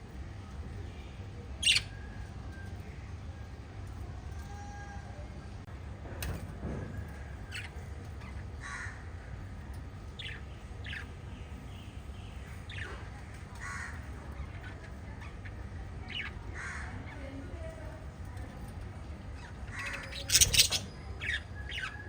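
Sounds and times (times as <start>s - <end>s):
steady low hum: 0.0s - 22.0s
budgerigars chirping: 1.6s - 1.9s, 19.7s - 22.0s.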